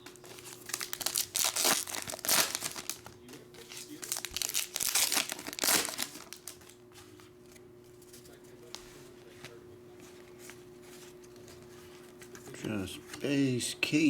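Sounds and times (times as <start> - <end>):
card pack wrappers crinkling: 0.0 - 6.8.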